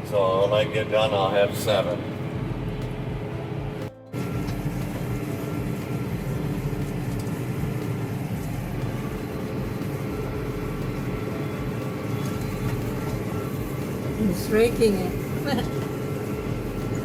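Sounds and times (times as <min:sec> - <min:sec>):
tractor engine running: 0:00.0 - 0:17.0.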